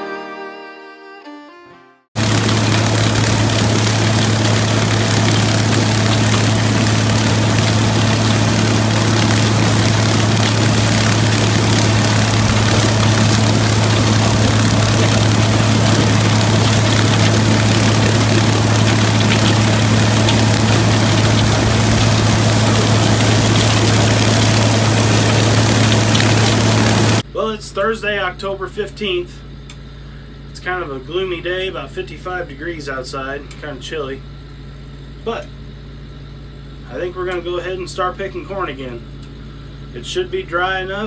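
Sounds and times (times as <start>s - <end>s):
farm machine engine running: 2.2s - 27.2s.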